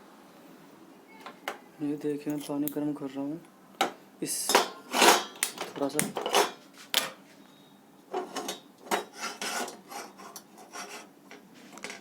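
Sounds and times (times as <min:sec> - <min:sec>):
utensils scraping and rubbing: 0:04.6 - 0:06.7, 0:08.1 - 0:12.0.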